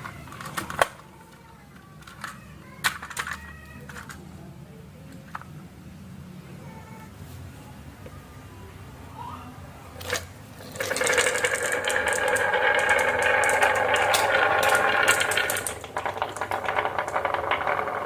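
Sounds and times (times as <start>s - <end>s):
marbles rolling down marble run: 10.1s - 18.0s.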